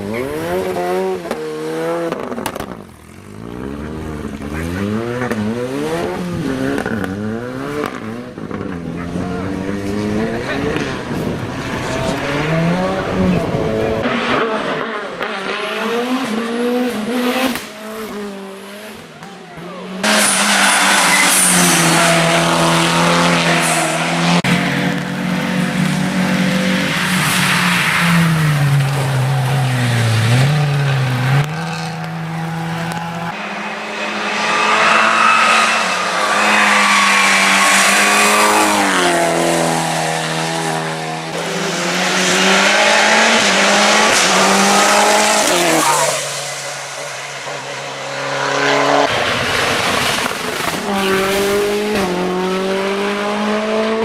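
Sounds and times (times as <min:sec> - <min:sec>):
race car engines revving: 0:00.0 - 0:54.0.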